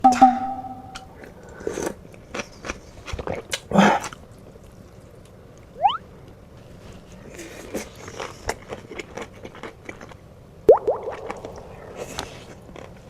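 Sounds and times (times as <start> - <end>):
short ringing tone: 0.0 - 1.2
crunchy chewing and biting: 1.5 - 5.7, 7.2 - 10.3.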